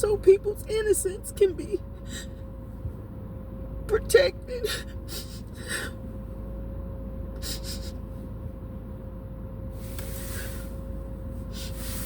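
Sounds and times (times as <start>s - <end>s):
vehicle cabin rumble: 0.0s - 12.0s
short hiss: 9.8s - 10.8s.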